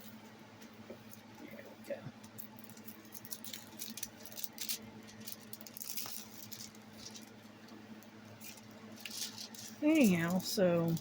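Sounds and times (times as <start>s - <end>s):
faint electrical hum: 0.0s - 11.0s
canvas and plastic crinkling: 2.4s - 7.5s, 8.4s - 11.0s.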